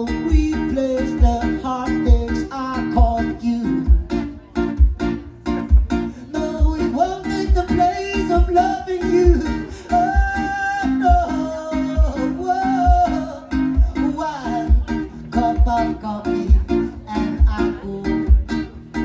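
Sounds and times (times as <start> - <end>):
strummed acoustic guitar: 0.0 - 19.0
person singing: 6.1 - 18.8.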